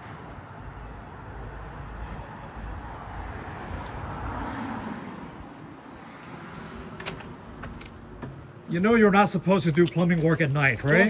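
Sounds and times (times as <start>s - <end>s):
vehicle passing: 0.7s - 7.6s.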